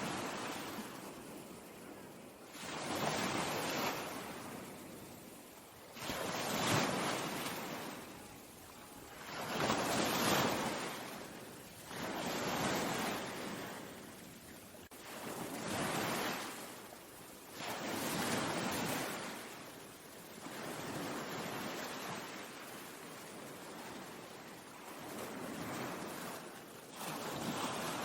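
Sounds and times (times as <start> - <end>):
ocean waves breaking: 0.0 - 19.7, 20.4 - 28.0.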